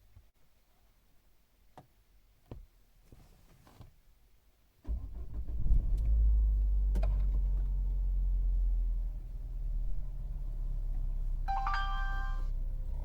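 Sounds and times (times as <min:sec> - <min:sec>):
car engine starting and idling: 0:04.9 - 0:13.0.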